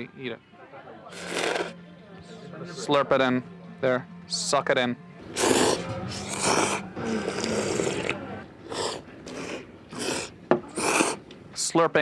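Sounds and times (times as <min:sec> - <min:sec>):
person slurping noodles: 0:01.1 - 0:01.8, 0:05.2 - 0:11.3.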